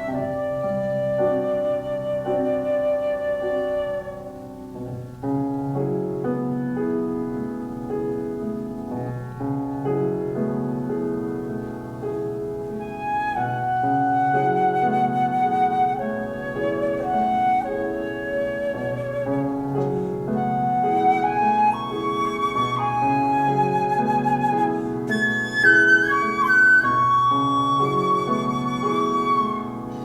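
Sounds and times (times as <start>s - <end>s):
flute playing: 0.0s - 4.6s, 12.8s - 30.0s
piano chords: 0.0s - 30.0s.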